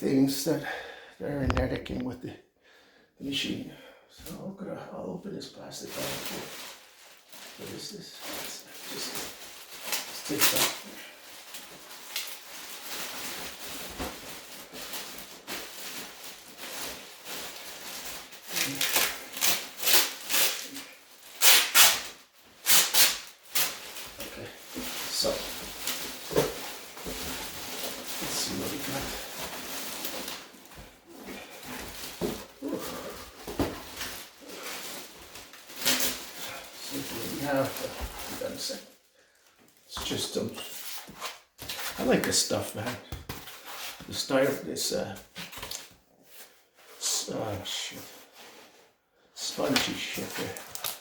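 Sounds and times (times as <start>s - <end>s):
plastic packaging crinkling: 5.9s - 40.8s, 49.6s - 51.0s.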